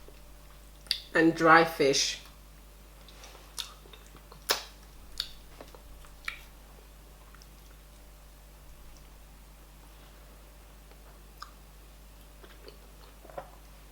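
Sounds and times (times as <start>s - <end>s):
eating clicks and smacks: 0.8s - 1.1s, 3.0s - 6.5s, 7.2s - 7.8s, 10.9s - 11.6s.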